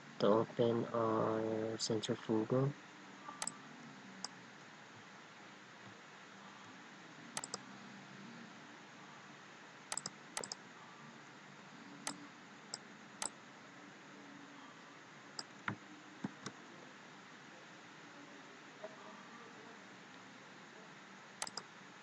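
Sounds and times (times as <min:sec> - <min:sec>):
faint room hiss: 0:00.0 - 0:22.0
mouse and keyboard clicks: 0:07.4 - 0:07.6, 0:09.9 - 0:10.6, 0:21.4 - 0:21.7.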